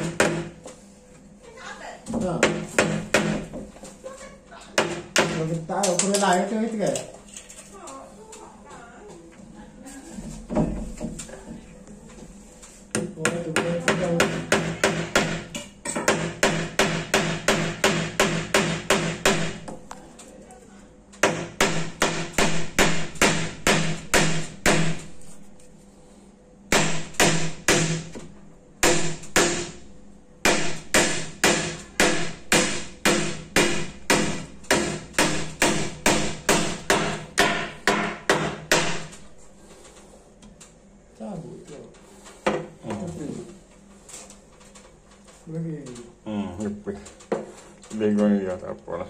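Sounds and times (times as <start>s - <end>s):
hammering on wood: 0.0s - 0.6s, 2.2s - 3.7s, 4.8s - 5.6s, 12.9s - 19.8s, 21.2s - 25.1s, 26.7s - 39.2s.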